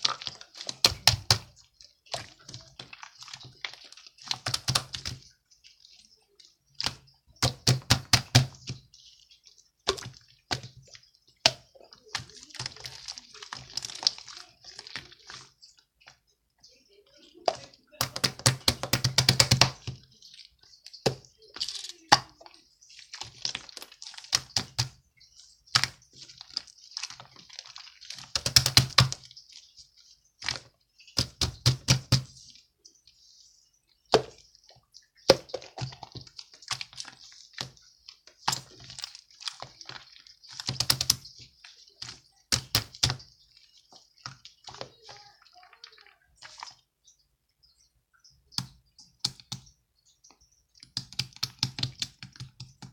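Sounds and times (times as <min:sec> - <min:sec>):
rapid clicking and tapping: 0:06.8 - 0:09.0, 0:17.5 - 0:20.2, 0:25.7 - 0:29.3, 0:35.3 - 0:45.4, 0:50.8 - 0:52.9.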